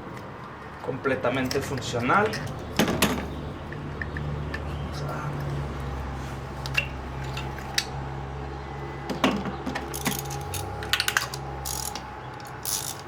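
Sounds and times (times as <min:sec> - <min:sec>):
metal parts clinking: 0:09.8 - 0:13.0.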